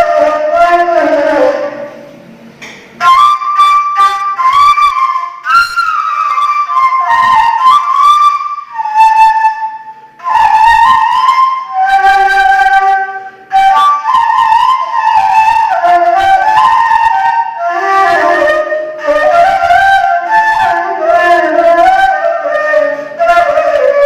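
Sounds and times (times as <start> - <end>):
breathy reed flute melody: 0.0 - 2.1, 3.0 - 24.0.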